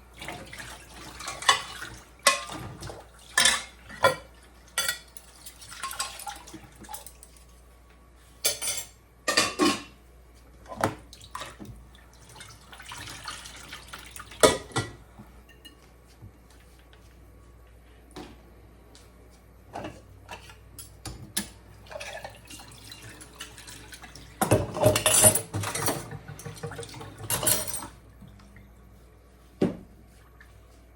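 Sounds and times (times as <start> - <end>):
water running: 0.0 - 7.6, 10.6 - 14.9, 21.7 - 30.9
dishes and cutlery clattering: 1.3 - 7.3, 8.4 - 10.0, 14.4 - 15.9, 24.4 - 28.0.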